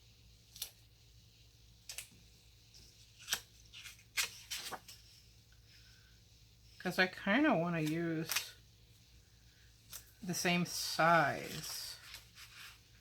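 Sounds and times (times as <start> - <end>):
paper pages rustling: 1.9 - 5.3, 9.9 - 13.0.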